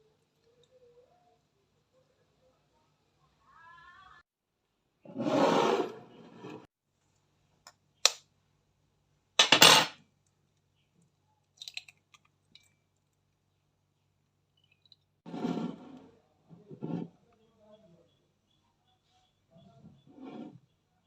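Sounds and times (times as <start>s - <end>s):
dishes clattering: 9.4s - 10.0s.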